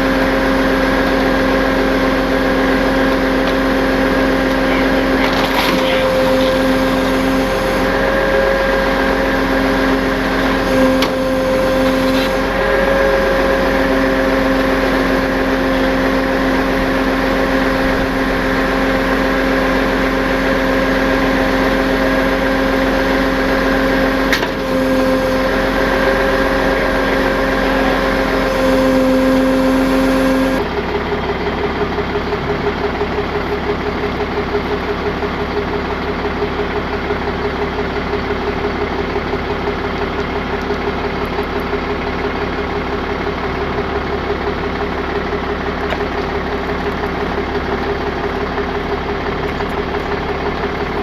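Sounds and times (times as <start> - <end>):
truck engine droning: 0.0 - 51.0.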